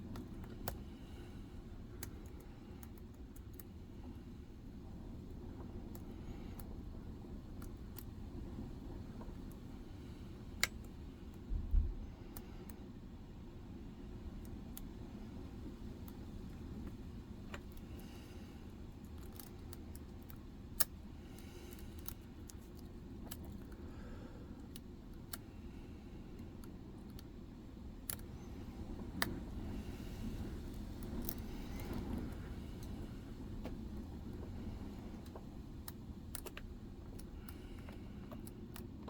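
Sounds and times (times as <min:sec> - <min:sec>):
low background rumble: 0:00.0 - 0:39.0
lock pick clicking on pins: 0:15.8 - 0:23.8, 0:30.6 - 0:33.0, 0:35.2 - 0:39.0.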